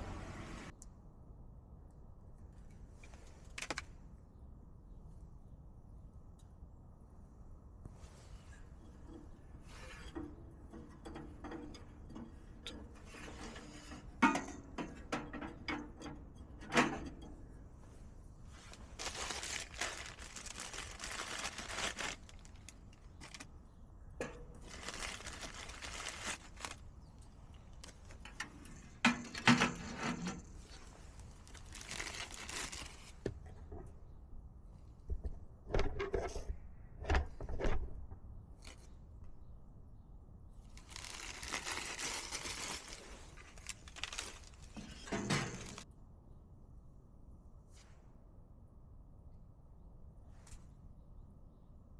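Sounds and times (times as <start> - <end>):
rustling or scraping: 7.9 - 33.8, 40.6 - 45.9.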